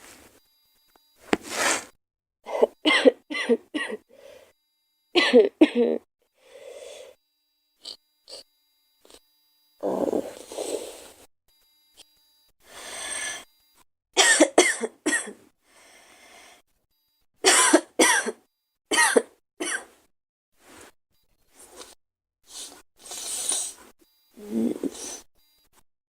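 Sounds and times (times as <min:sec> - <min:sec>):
breath drawn in: 0:01.3 - 0:01.9, 0:09.8 - 0:11.3, 0:22.5 - 0:23.9
girl coughing: 0:02.5 - 0:04.0, 0:05.2 - 0:06.0, 0:14.2 - 0:15.4, 0:17.4 - 0:19.9.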